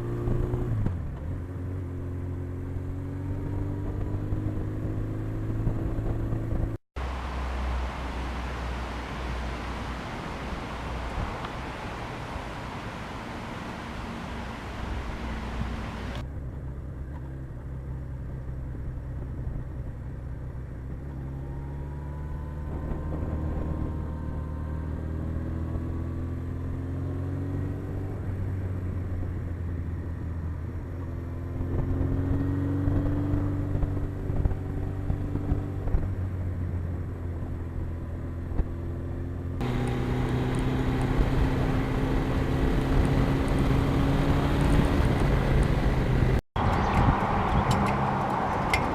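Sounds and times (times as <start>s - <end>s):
motorcycle engine accelerating: 0.0s - 11.8s, 18.4s - 48.9s
wind rushing across microphone: 3.2s - 7.2s, 18.6s - 26.7s, 27.4s - 48.9s.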